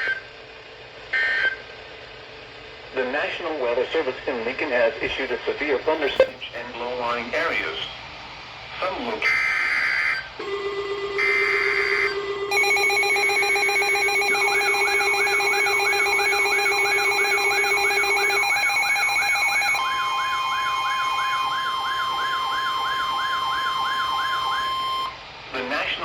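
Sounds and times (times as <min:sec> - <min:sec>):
steady single alarm tone: 0:09.3 - 0:25.2
pulsing beeps: 0:11.2 - 0:25.2
siren tone sweeping up and down: 0:11.2 - 0:25.2
data burst: 0:12.5 - 0:25.2.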